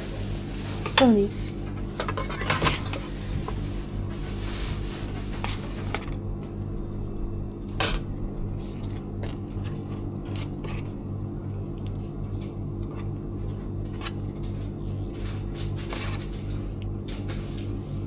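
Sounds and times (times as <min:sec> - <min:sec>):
low electrical hum: 0:00.0 - 0:18.0
utensils and containers clattering: 0:00.6 - 0:06.2.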